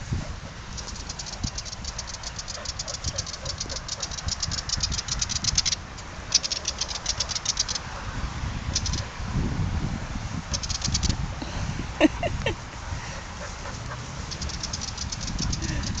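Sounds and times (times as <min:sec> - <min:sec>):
low rumbling wind: 0:00.0 - 0:16.0
bird rattling chatter: 0:00.7 - 0:07.9, 0:08.7 - 0:09.2, 0:10.5 - 0:11.2, 0:13.4 - 0:16.0.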